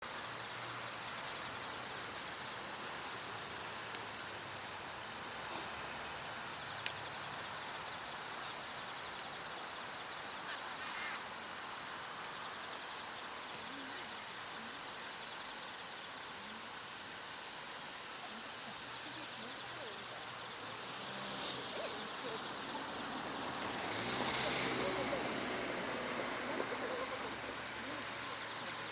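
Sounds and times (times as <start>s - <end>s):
hiss of water and air: 0.1s - 28.9s
waterfowl calling: 10.3s - 11.7s, 18.2s - 28.9s.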